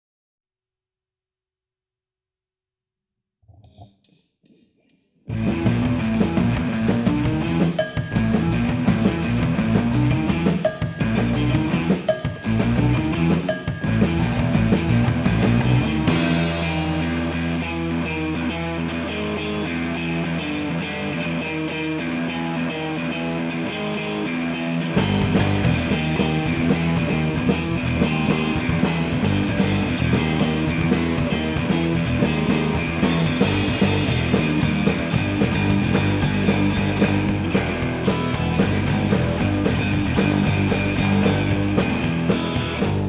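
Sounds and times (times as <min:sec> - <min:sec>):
instrumental rock guitar: 0:05.3 - 0:43.0
drum hits: 0:05.7 - 0:17.4.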